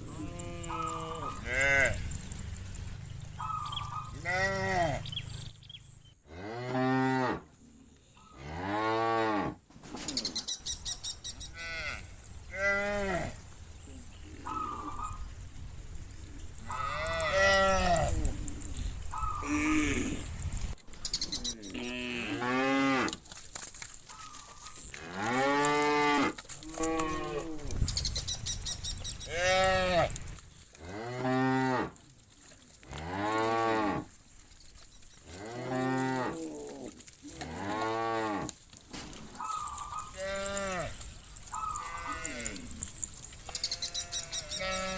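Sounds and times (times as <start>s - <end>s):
cattle mooing: 0.0s - 5.4s, 16.6s - 20.4s, 29.2s - 30.2s, 39.8s - 42.8s, 43.5s - 44.9s.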